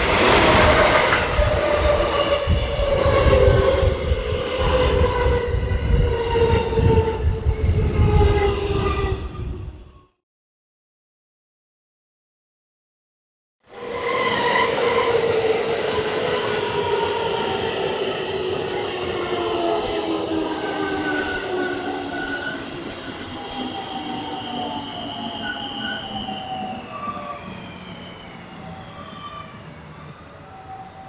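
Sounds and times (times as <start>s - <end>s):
electric train motors whining: 13.7s - 31.0s
brake squeals: 19.8s - 31.0s.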